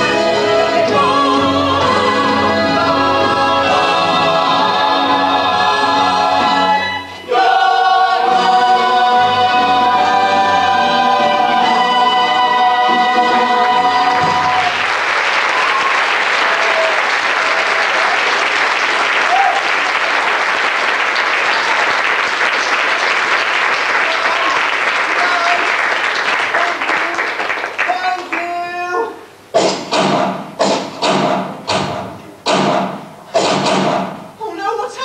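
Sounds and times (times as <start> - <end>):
cast singing in chorus: 0.0 - 14.8
audience applauding: 14.2 - 28.6.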